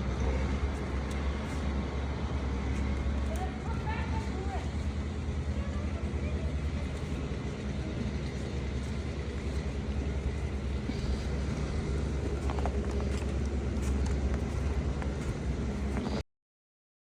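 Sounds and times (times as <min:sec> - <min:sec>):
motor vehicle rumbling: 0:00.0 - 0:16.2.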